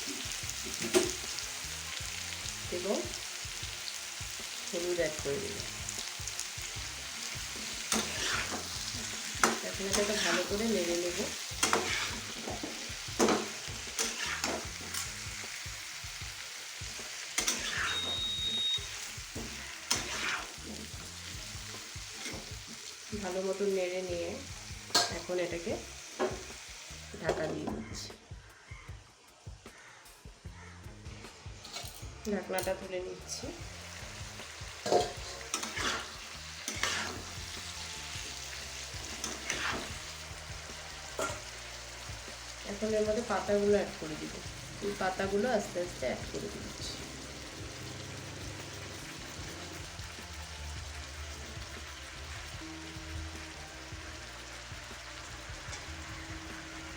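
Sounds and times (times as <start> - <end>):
vegetables sizzling in oil: 0.0 - 28.6, 31.4 - 56.9
spatula scraping a pan: 7.3 - 15.4, 17.4 - 18.7, 19.4 - 21.1, 34.8 - 40.2.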